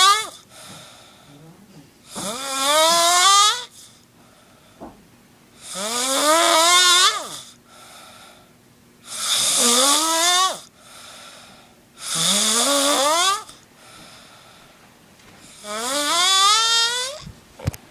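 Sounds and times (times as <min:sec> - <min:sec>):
quiet breaths: 0:00.4 - 0:02.0, 0:03.7 - 0:04.9, 0:07.5 - 0:08.6, 0:10.7 - 0:11.9, 0:13.8 - 0:15.6
hissy snores with whistling tone: 0:09.1 - 0:10.7, 0:12.0 - 0:13.5, 0:15.6 - 0:17.2.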